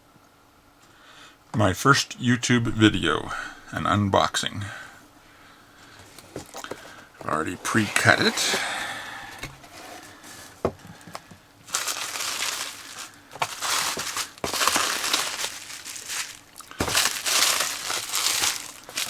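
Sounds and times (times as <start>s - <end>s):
packing material rustling: 9.7s - 19.0s
cardboard box being opened: 11.7s - 19.0s.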